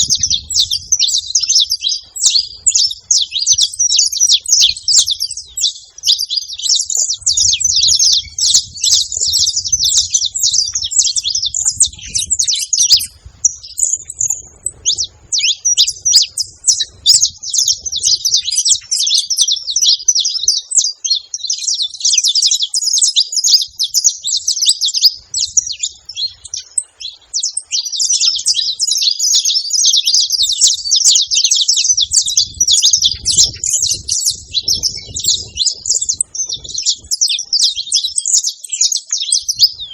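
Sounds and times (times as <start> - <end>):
finches chirping and singing: 0.0 - 39.9.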